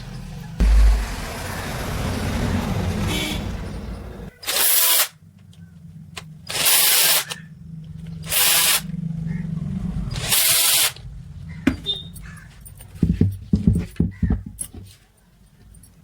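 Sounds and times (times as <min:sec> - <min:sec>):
angle grinder running: 0:08.2 - 0:09.0, 0:10.1 - 0:11.0.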